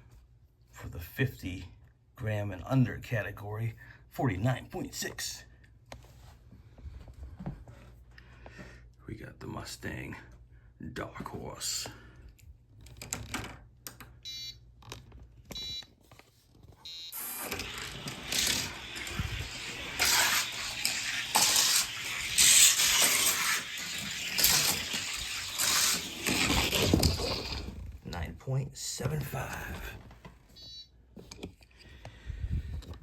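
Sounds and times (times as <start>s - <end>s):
short electronic beeps: 16.9s - 17.3s
toy car wheels rattling on track: 17.2s - 27.7s.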